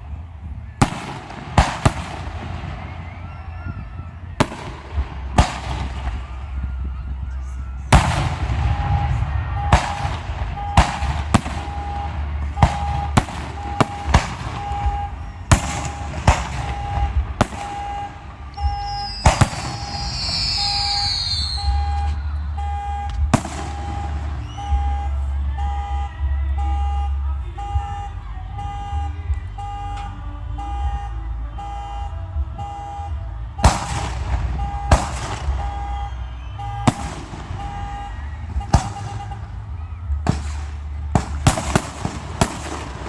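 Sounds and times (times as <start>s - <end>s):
low rumble: 0.0s - 43.0s
fireworks booms: 0.8s - 3.8s, 4.4s - 6.5s, 7.9s - 25.0s, 33.6s - 39.5s, 40.2s - 43.0s
electronic beep: 8.6s - 11.0s, 11.6s - 33.7s, 34.6s - 39.5s
falling whistle: 11.6s - 29.0s, 34.6s - 39.4s.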